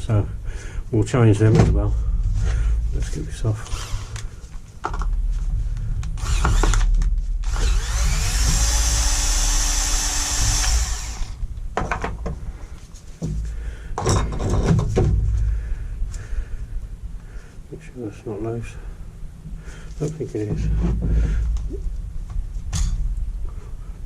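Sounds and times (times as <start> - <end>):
electric drill spinning: 3.6 - 4.2, 6.2 - 11.4
knocks and clatter of parts: 11.8 - 12.5, 13.2 - 15.5, 22.6 - 23.1.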